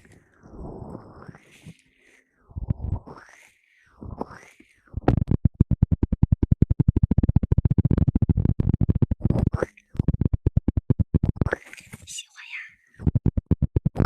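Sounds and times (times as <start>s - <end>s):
rapid close-up scratching: 4.2s - 12.1s.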